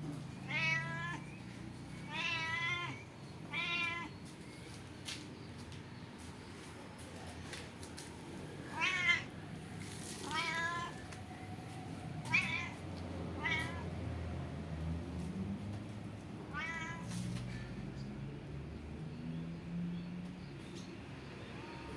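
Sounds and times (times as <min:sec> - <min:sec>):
cat meowing: 0:00.4 - 0:01.2, 0:02.0 - 0:04.2, 0:08.7 - 0:09.3, 0:10.2 - 0:11.1, 0:12.2 - 0:12.8, 0:13.4 - 0:13.9, 0:16.5 - 0:17.1.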